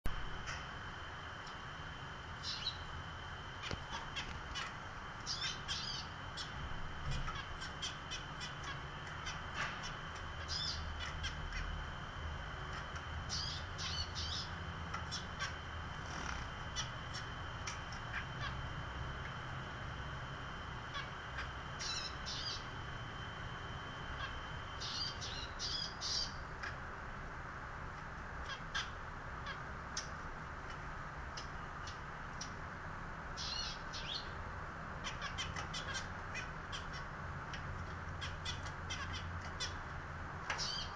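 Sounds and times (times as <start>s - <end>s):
finches calling: 2.3s - 19.4s, 20.0s - 26.8s, 33.4s - 34.4s, 35.0s - 39.9s, 40.5s - 40.9s.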